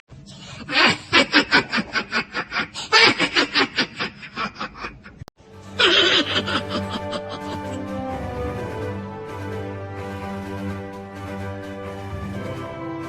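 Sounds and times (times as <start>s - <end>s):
person laughing: 0.6s - 7.9s.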